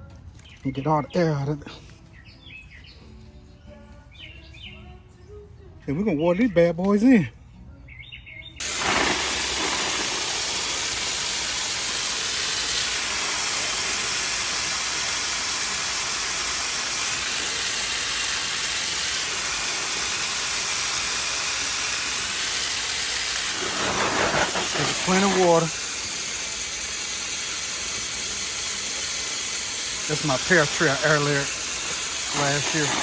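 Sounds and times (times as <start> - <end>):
water spraying from garden hose: 8.6 - 33.0.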